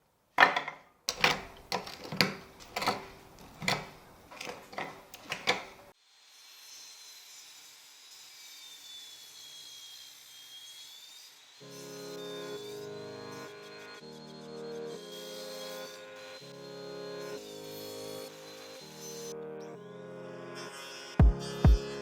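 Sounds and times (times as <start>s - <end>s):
thin wavering whistle: 8.6s - 11.1s, 11.8s - 17.6s.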